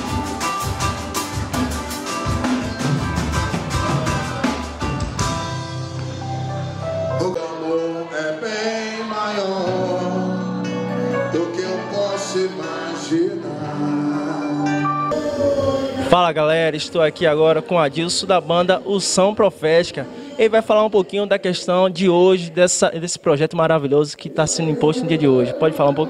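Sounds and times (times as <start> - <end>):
steady drumbeat: 0.0 - 5.6
band playing: 0.0 - 21.0
person singing: 6.6 - 16.4.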